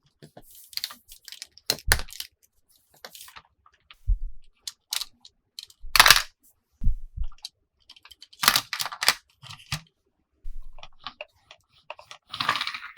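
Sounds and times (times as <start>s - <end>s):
plastic toy packaging crinkling: 0.6s - 2.4s, 4.7s - 6.3s, 7.9s - 9.8s.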